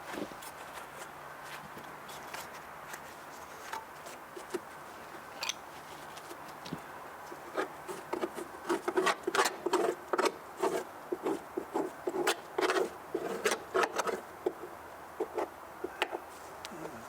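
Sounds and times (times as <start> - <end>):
chisel scraping lawnmower deck: 7.4 - 16.2.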